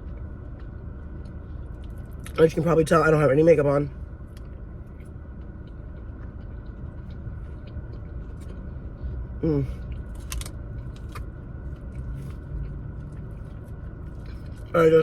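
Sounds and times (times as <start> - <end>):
low background hum: 0.0 - 15.0
person chewing food: 4.3 - 15.0.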